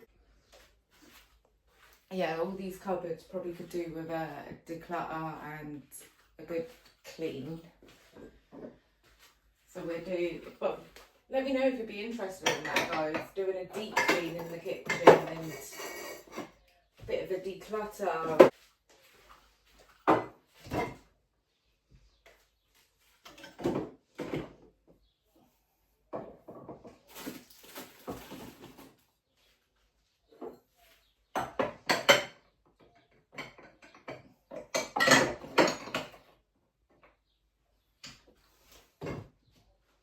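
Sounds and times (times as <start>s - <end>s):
knocks and clatter in cupboards: 12.4s - 16.5s, 20.0s - 21.1s, 23.3s - 24.7s, 26.1s - 27.1s, 31.4s - 36.3s, 39.0s - 39.4s.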